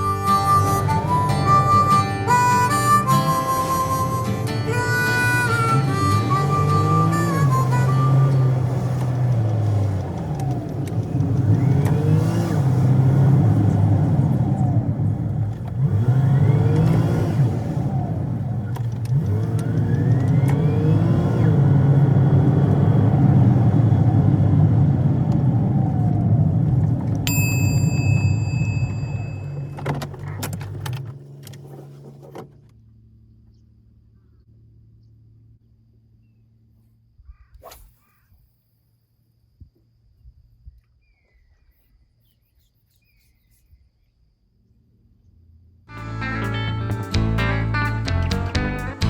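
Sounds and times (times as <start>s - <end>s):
vehicle engine accelerating: 0.0s - 32.2s
short electronic beep: 27.3s - 29.8s.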